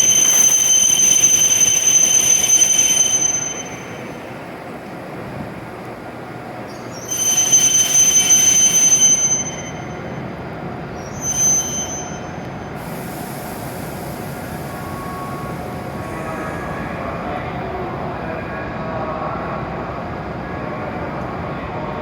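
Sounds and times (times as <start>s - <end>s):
train rumbling slowly: 0.0s - 22.0s
high-pitched metallic squeal: 6.9s - 10.1s, 11.0s - 12.5s
steady hiss: 12.8s - 16.9s.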